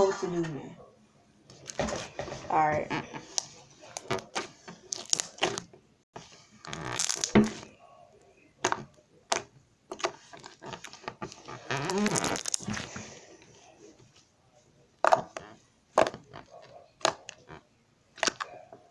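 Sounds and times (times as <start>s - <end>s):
slime squelching and popping: 3.1s - 5.7s, 6.6s - 7.8s, 8.6s - 13.0s, 15.0s - 18.6s.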